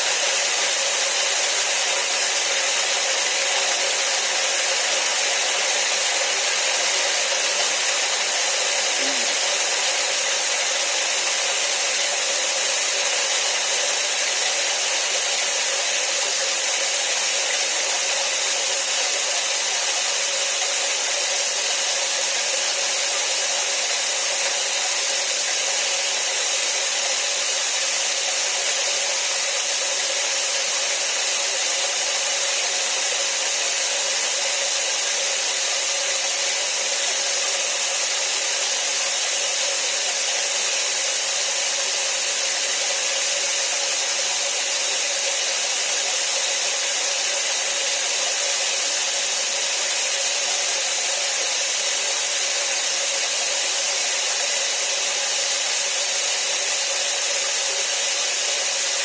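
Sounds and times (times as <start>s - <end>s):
heavy rain hiss: 0.0s - 15.5s.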